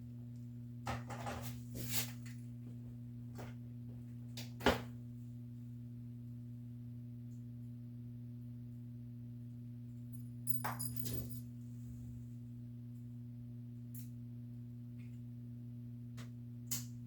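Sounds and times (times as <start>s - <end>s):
steady low hum: 5.0s - 17.0s.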